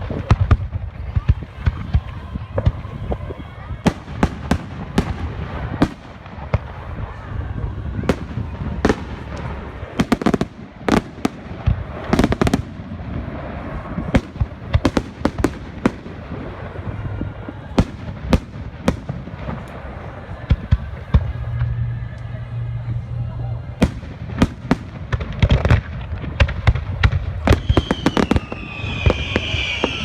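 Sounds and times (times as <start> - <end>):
fireworks bangs and crackles: 0.0 - 30.0
low rumble: 4.0 - 27.5.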